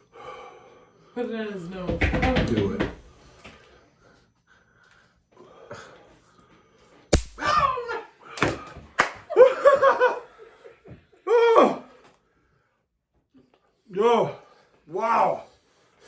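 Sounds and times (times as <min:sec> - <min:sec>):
sharp slap: 0:07.2 - 0:07.7.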